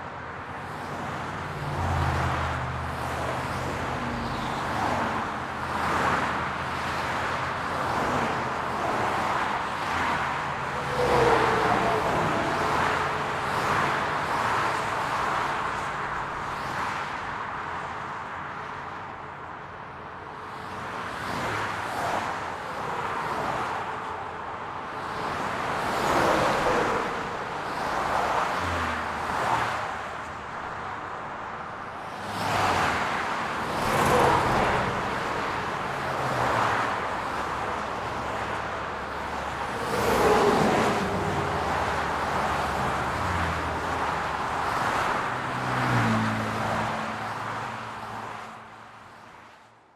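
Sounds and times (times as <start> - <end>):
highway traffic passing: 0.0 - 49.9.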